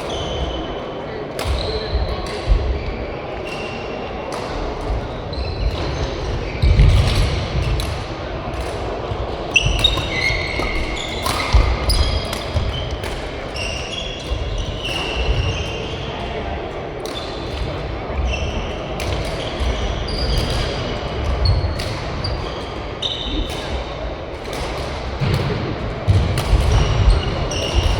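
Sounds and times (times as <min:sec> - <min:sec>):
shoes squeaking on court floor: 0:00.0 - 0:07.4, 0:09.0 - 0:16.4, 0:17.0 - 0:23.8, 0:26.4 - 0:27.9
racket striking shuttlecock: 0:24.4 - 0:27.9.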